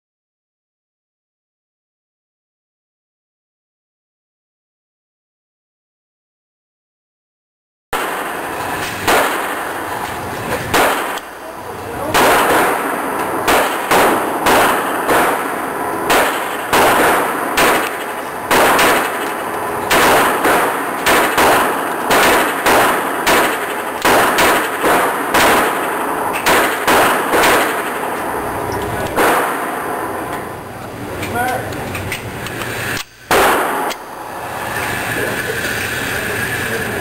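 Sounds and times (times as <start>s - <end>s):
pistol gunshots with echo: 8.0s - 30.5s, 33.3s - 34.3s.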